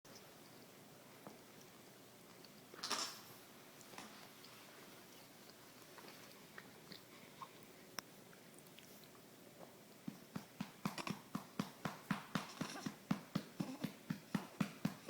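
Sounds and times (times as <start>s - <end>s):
hand patting baby's back: 10.1s - 15.0s.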